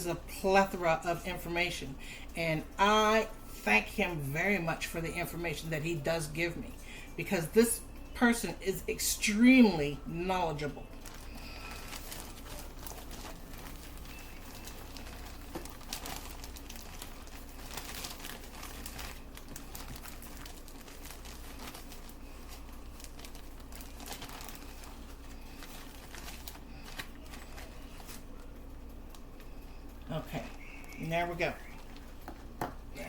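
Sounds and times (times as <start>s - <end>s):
bag crinkling and rustling: 10.8s - 31.0s.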